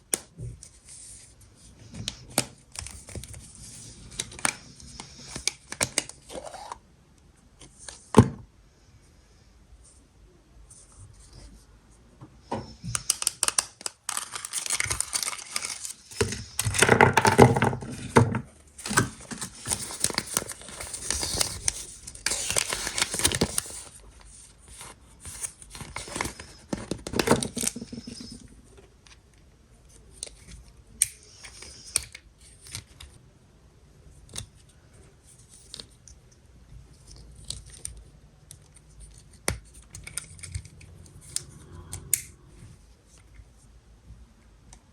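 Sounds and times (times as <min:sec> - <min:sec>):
wrapper tearing and crinkling: 0:13.1 - 0:16.8, 0:18.8 - 0:24.0.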